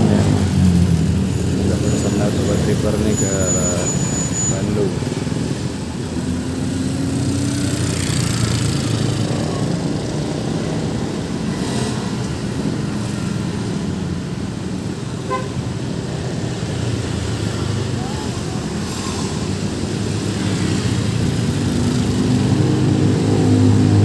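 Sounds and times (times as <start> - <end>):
road traffic: 0.0 - 24.0.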